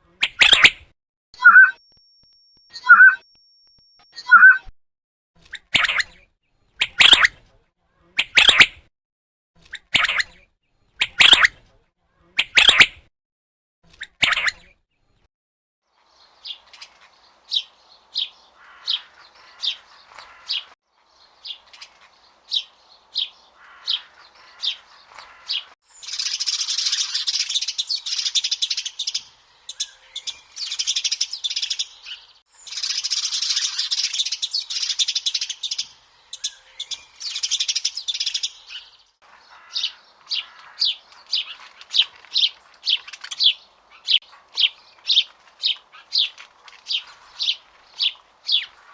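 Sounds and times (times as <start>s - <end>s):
small birds chirping: 0.0s - 0.8s, 5.4s - 7.4s, 16.0s - 48.9s
chorus of birds twittering: 16.1s - 46.3s.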